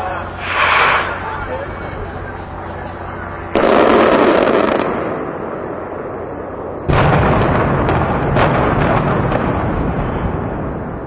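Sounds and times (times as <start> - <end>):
deep rumbling: 0.0 - 11.0
sharp crack: 0.4 - 1.8
heavy explosion boom: 0.4 - 2.0, 3.5 - 11.0.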